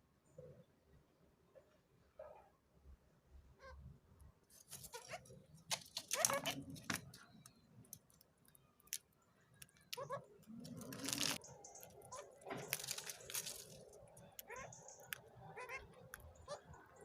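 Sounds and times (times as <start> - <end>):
parakeet squeaks: 4.8 - 5.2, 6.1 - 6.7, 9.9 - 10.3, 10.9 - 12.9, 14.4 - 16.7
parakeet chattering: 6.1 - 6.7, 9.8 - 13.4, 14.2 - 17.0.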